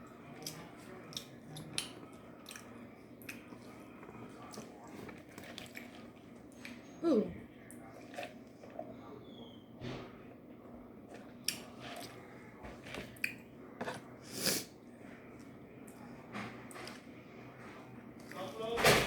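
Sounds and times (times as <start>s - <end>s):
person chewing food: 0.3s - 7.0s, 7.7s - 8.9s, 11.1s - 14.2s.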